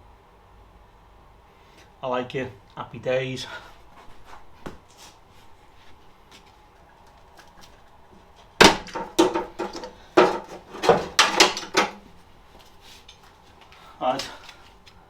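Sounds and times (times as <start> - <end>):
metallic clanks and knocks: 8.6 - 12.1.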